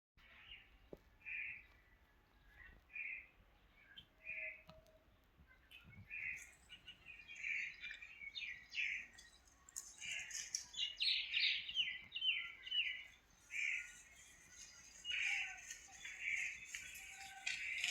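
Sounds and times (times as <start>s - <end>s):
birds chirping and calling: 5.5s - 17.9s.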